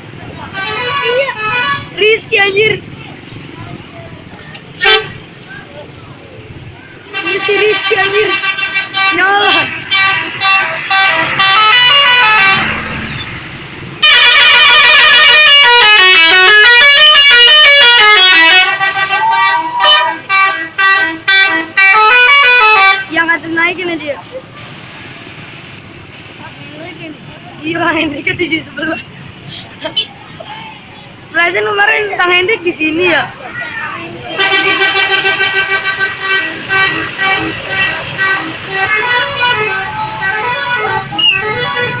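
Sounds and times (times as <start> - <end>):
bus horn playing a melody: 0.5 - 1.9, 4.8 - 5.2, 7.1 - 12.9, 14.0 - 23.1, 34.3 - 42.0.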